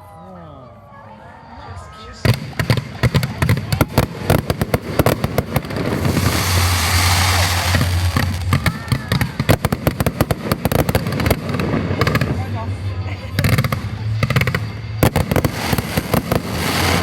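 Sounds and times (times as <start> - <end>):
fireworks bangs and cracks: 2.2 - 17.0
fireworks hissing crackle: 2.4 - 17.0.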